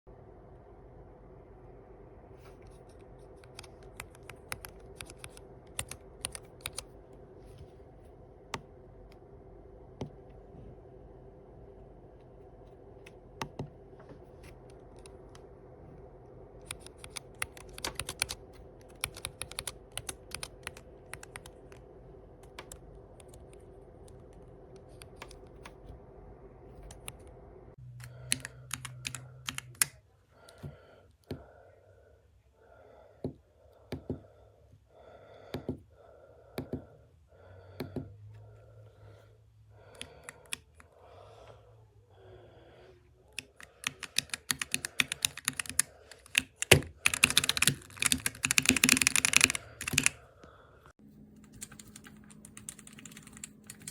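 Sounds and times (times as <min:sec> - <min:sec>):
faint steady hum: 0:00.1 - 0:53.9
keypad keys clacking: 0:03.4 - 0:06.9, 0:16.6 - 0:21.8, 0:28.2 - 0:29.9, 0:43.4 - 0:50.2, 0:51.4 - 0:53.9.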